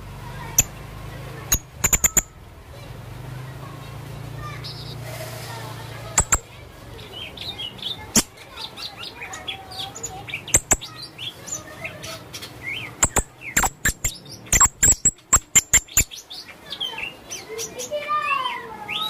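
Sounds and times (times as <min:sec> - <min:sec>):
parrot chirping: 0:00.4 - 0:00.8, 0:01.4 - 0:02.4, 0:06.0 - 0:17.8
parrot clicking chips: 0:01.5 - 0:02.3, 0:10.5 - 0:10.9, 0:13.0 - 0:16.0.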